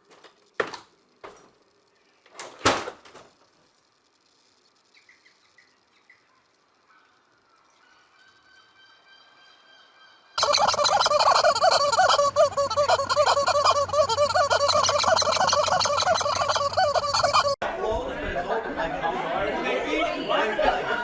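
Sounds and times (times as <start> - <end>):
flock of fowl calling: 10.4 - 17.6.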